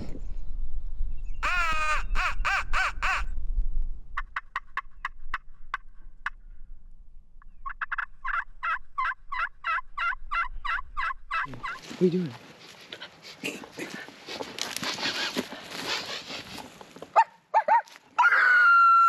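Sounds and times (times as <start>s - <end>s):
wind rumble on microphone: 0.0s - 11.8s
turkey call yelps: 1.4s - 3.3s, 7.6s - 11.8s, 17.2s - 19.0s
sharp turkey clucks: 4.2s - 6.4s, 7.4s - 11.9s.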